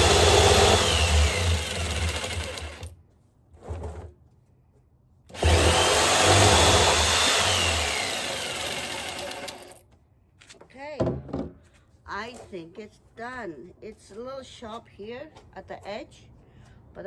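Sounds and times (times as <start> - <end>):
jigsaw cutting metal barrel: 0.0 - 2.9, 5.3 - 9.8.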